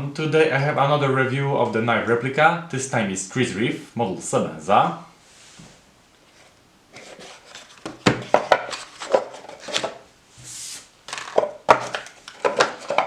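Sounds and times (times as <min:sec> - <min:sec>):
short sliding rub: 0:10.3 - 0:10.9.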